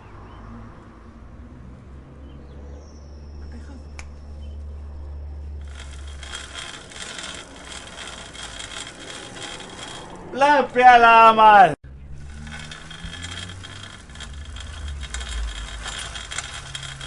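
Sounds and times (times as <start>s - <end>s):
bicycle freewheel clicking rapidly: 5.6s - 10.6s, 12.2s - 17.0s.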